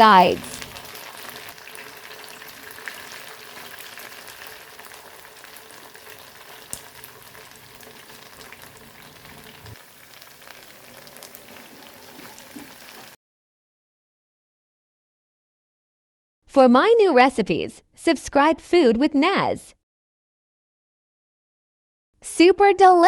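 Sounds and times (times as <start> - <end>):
meat sizzling in hot oil: 0.0 - 13.2.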